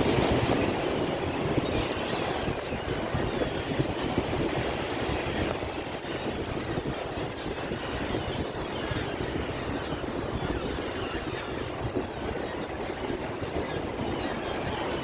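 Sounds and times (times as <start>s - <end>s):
sea waves washing in: 0.0s - 7.4s.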